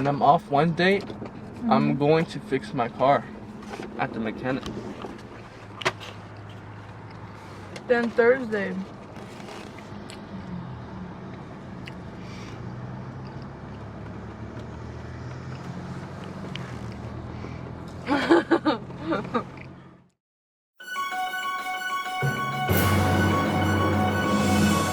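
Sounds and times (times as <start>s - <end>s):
music: 20.8s - 24.9s.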